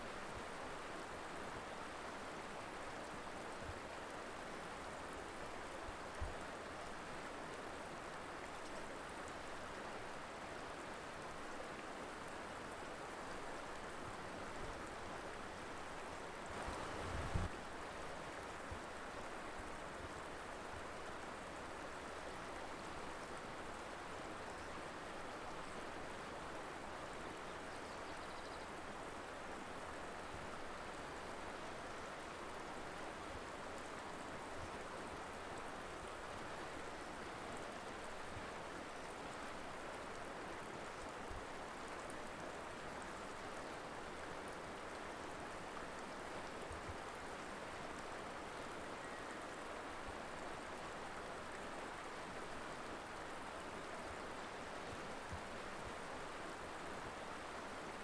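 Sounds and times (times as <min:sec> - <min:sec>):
river water rushing over rocks: 0:16.4 - 0:17.5.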